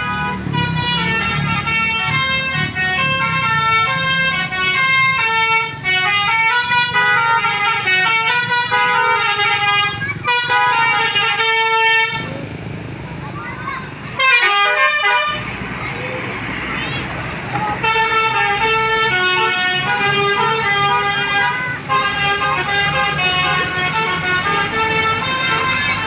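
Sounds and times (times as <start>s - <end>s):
musical air horn melody: 0.0s - 12.4s, 14.2s - 15.5s, 17.8s - 26.0s
bus engine running: 0.0s - 26.0s.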